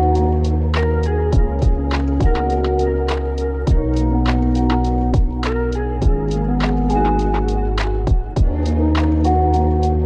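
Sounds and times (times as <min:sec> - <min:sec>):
hi-hat ticks: 0:00.0 - 0:10.0
deep kick drums: 0:01.3 - 0:02.5, 0:03.7 - 0:04.0, 0:05.1 - 0:06.4, 0:08.0 - 0:08.7.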